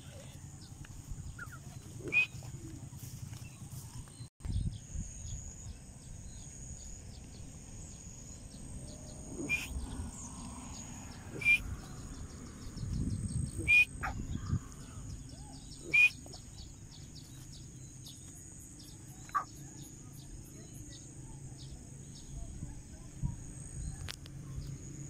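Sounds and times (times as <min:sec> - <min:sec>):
low rumble: 0:00.0 - 0:17.1
bird short sharp calls: 0:01.4 - 0:02.7, 0:11.3 - 0:11.7, 0:13.5 - 0:14.6, 0:15.8 - 0:16.5
insect trill: 0:04.8 - 0:22.4.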